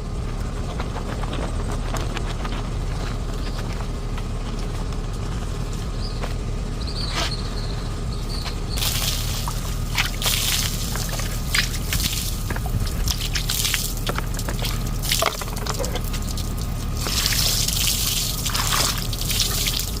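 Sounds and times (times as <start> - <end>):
low rumble: 0.0 - 20.0
water dripping and trickling: 8.8 - 20.0.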